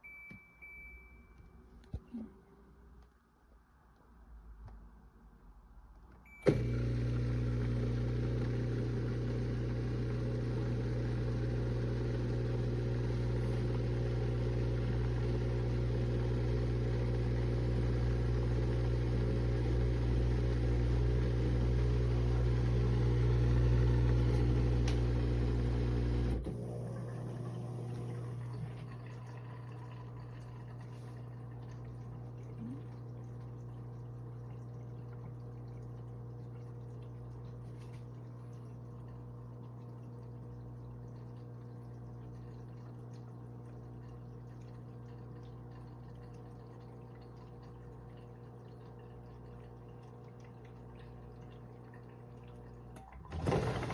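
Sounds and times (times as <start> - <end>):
dishwasher motor hum and hiss: 6.4 - 38.8, 52.2 - 53.9.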